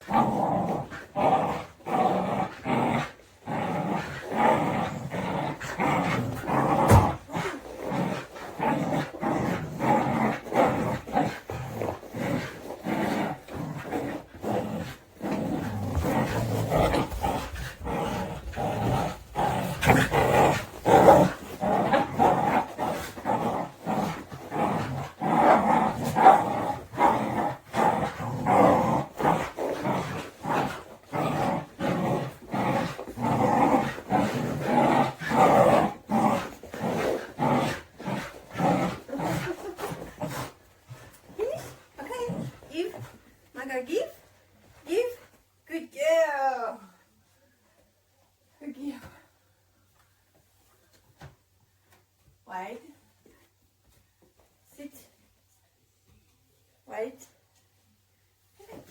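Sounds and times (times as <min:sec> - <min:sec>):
dogs growling playfully: 0:00.0 - 0:43.5.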